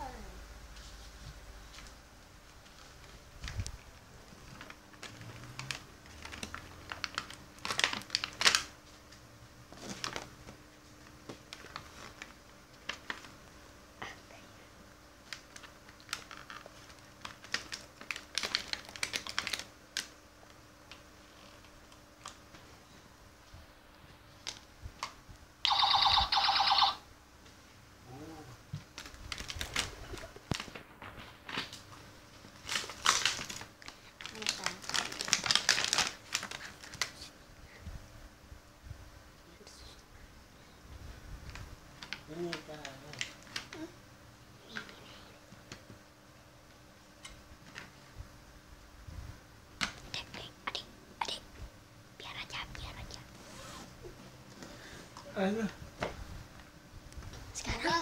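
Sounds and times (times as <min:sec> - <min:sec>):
plastic packaging clicking and crinkling: 0:04.3 - 0:13.4, 0:15.2 - 0:22.6, 0:24.4 - 0:25.2, 0:28.8 - 0:37.3, 0:41.5 - 0:43.9.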